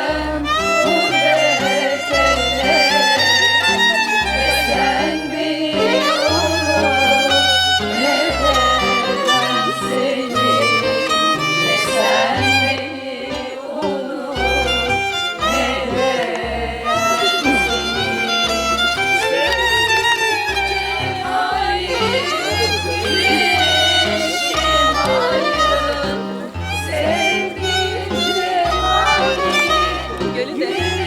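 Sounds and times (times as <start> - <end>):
violin melody: 0.0 - 31.0
repeating bass line: 14.4 - 28.1.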